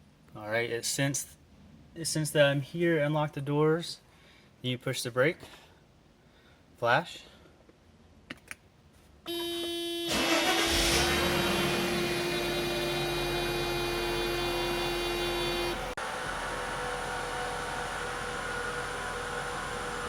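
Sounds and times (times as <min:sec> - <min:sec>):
car engine cranking and idling: 0:10.1 - 0:20.0.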